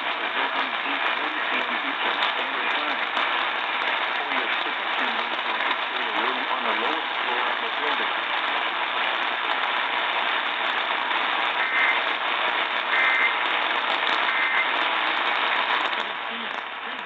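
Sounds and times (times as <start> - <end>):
radio static: 0.0 - 17.0.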